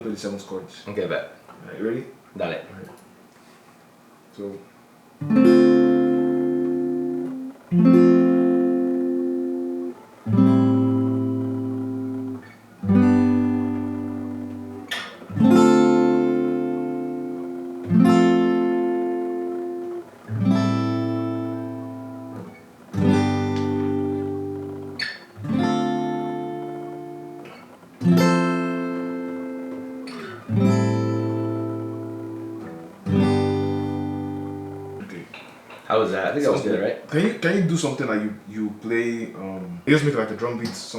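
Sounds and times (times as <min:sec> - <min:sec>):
acoustic guitar strumming chords: 0:05.2 - 0:39.1.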